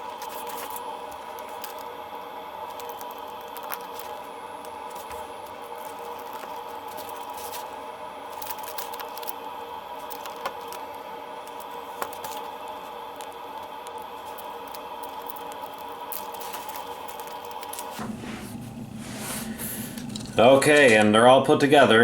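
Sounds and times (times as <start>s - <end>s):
steady hum: 18.0s - 22.0s.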